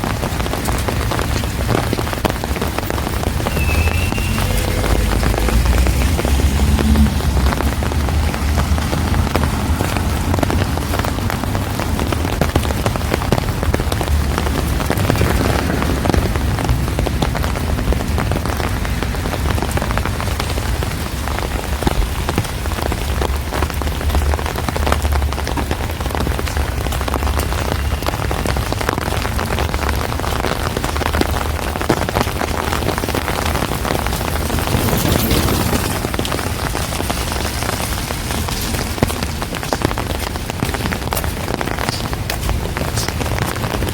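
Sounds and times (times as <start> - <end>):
heavy rain on street: 0.0 - 43.9
low rumble: 2.8 - 12.0, 12.8 - 21.2.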